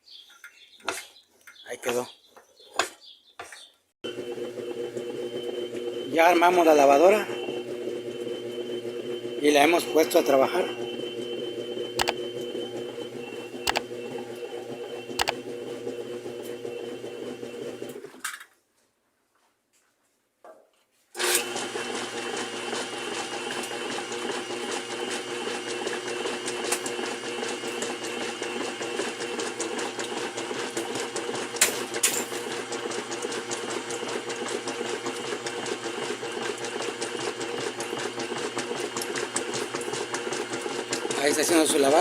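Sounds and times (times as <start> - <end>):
washing machine running: 4.0 - 18.1, 21.2 - 42.0.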